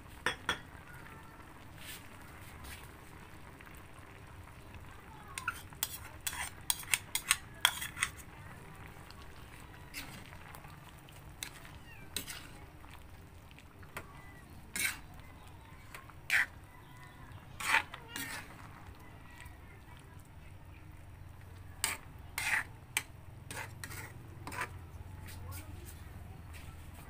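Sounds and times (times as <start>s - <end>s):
metal utensil scraping a pot: 5.4s - 8.4s, 11.4s - 12.6s, 14.7s - 15.2s, 15.8s - 16.6s, 17.3s - 18.7s, 21.8s - 24.8s.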